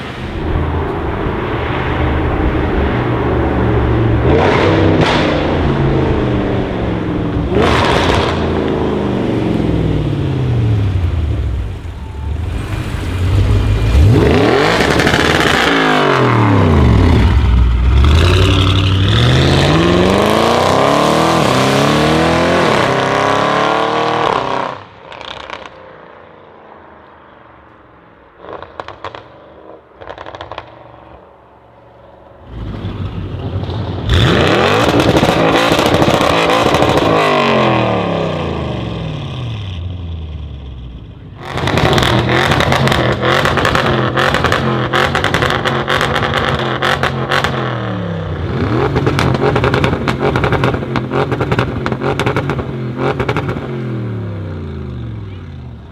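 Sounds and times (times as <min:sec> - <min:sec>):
car engine revving and accelerating: 0:00.0 - 0:25.8, 0:32.4 - 0:55.9
exhaust pops: 0:28.5 - 0:31.3, 0:32.5 - 0:37.8, 0:40.6 - 0:47.9, 0:48.5 - 0:53.9.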